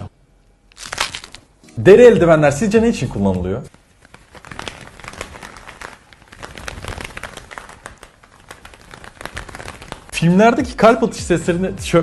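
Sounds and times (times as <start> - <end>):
leather gloves slapping: 3.7 - 10.2.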